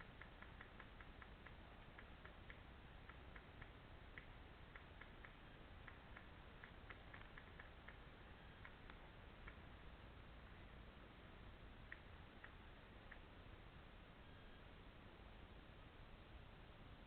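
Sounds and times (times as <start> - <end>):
short high ticks: 0.0 - 9.6
faint hiss: 0.0 - 17.0.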